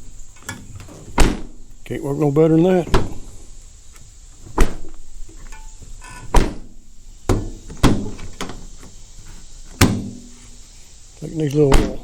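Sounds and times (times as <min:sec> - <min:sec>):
car door latch clunks: 0:01.1 - 0:01.6, 0:06.3 - 0:06.7, 0:11.7 - 0:12.0.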